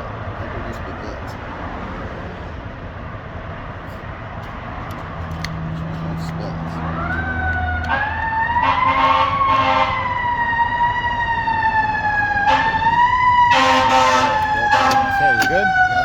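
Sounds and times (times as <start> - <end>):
fire truck siren wailing: 4.6 - 16.0
harsh horn blasts: 7.9 - 10.1, 12.4 - 16.0.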